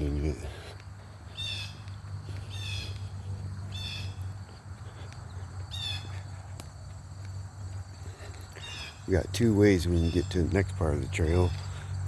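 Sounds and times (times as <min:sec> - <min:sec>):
steady low rumble: 0:00.0 - 0:09.3
bird raspy call: 0:01.3 - 0:01.8, 0:02.4 - 0:04.2, 0:05.4 - 0:06.2, 0:08.6 - 0:09.1.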